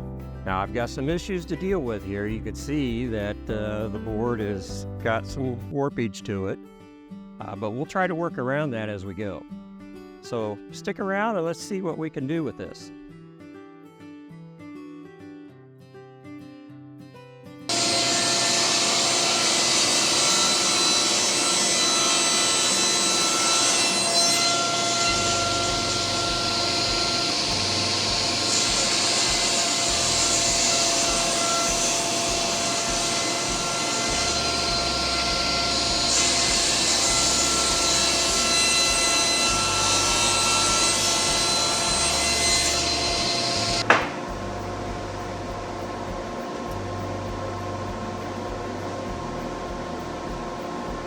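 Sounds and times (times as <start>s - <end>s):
table saw cutting hardwood: 17.7s - 44.4s
steady hum: 43.1s - 51.0s
sharp knock: 43.8s - 44.3s.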